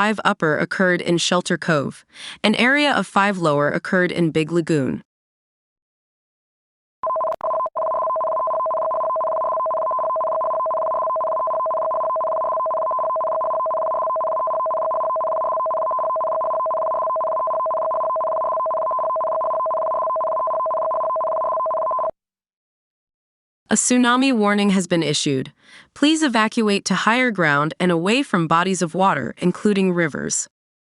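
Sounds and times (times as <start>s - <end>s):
two-tone emergency alert tone: 7.0s - 22.2s.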